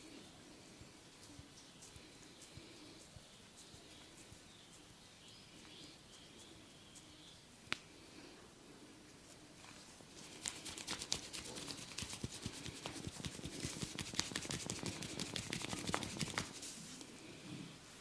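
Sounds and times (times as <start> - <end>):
hands tapping and rubbing hair: 10.2 - 16.7.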